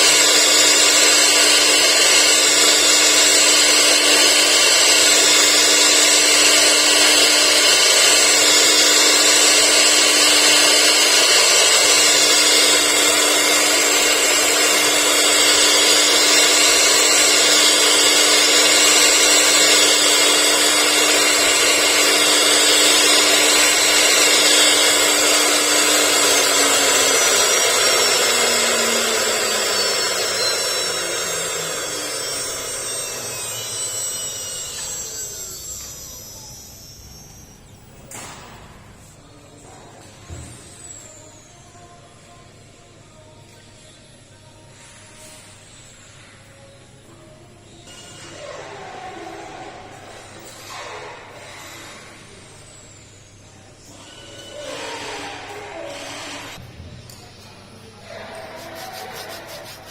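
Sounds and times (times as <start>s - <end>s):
wood cutting noise: 0.0s - 37.5s, 53.9s - 56.6s, 58.0s - 59.9s
wood router spindle whining: 0.0s - 38.3s, 53.9s - 56.6s, 58.0s - 59.9s.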